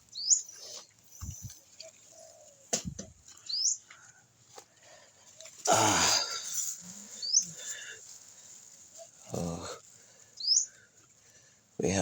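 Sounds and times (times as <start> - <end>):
bird chirping: 0.0 - 2.8, 3.4 - 3.9, 6.8 - 7.9, 10.4 - 10.9.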